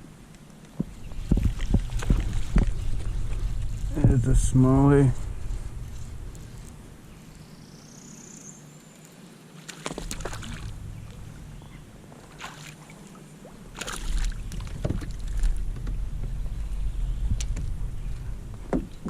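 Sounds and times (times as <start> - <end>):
low rumbling noise: 0.0 - 8.0, 10.0 - 19.0
knocks against kayak hull: 14.6 - 16.0, 18.7 - 19.0.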